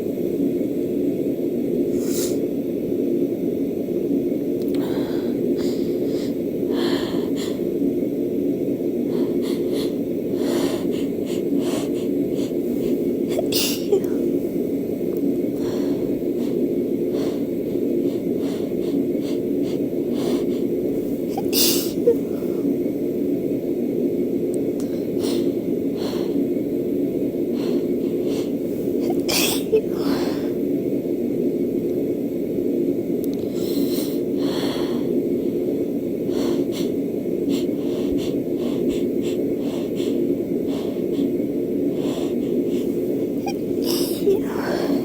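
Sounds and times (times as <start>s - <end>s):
low hum: 0.0s - 45.0s
catching breaths: 4.7s - 8.2s, 8.8s - 22.9s, 24.6s - 30.7s, 33.4s - 45.0s
woman sneezing: 13.3s - 14.1s, 29.0s - 29.9s.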